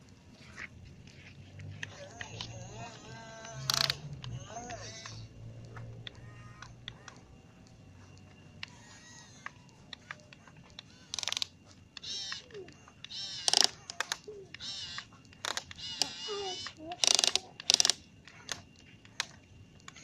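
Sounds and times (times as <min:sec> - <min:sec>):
small clicks: 0:00.0 - 0:20.0
child squealing: 0:15.8 - 0:17.5.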